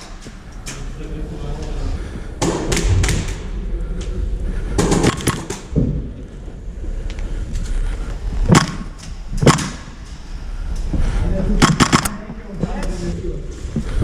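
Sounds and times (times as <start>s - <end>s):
rumble of movement: 0.0s - 14.0s
airsoft gun cracks: 5.0s - 5.7s, 8.5s - 9.9s, 11.6s - 12.2s
loud knocks: 8.5s - 10.0s.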